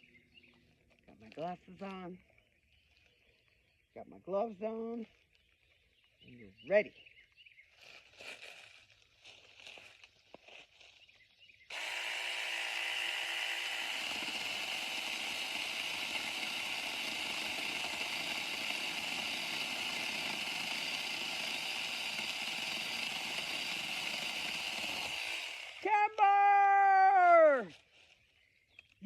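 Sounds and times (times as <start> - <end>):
chain cutting through sapling: 11.7 - 25.8
mini chainsaw high-pitched whine: 11.7 - 25.9.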